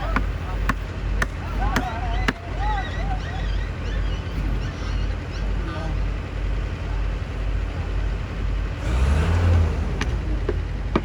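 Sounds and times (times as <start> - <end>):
heavy engine rumbling: 0.0 - 11.0.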